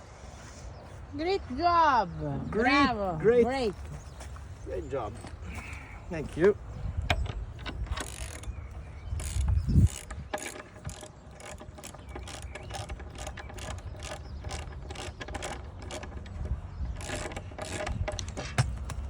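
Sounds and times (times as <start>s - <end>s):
ratchet wrench clicking: 7.8s - 16.4s, 17.0s - 18.2s.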